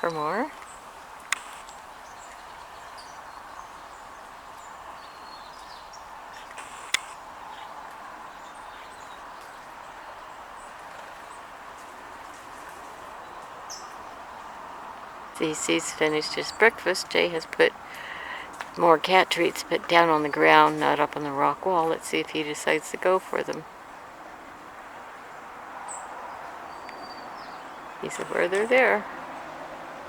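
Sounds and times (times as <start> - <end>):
small songbirds chirping: 0.0 - 29.6
steady background noise: 0.0 - 30.0
sharp click: 1.3 - 1.8.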